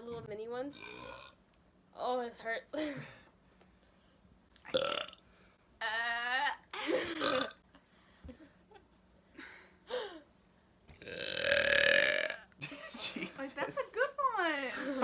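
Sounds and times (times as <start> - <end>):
person burping: 4.7 - 5.2, 6.9 - 7.6, 11.0 - 12.5.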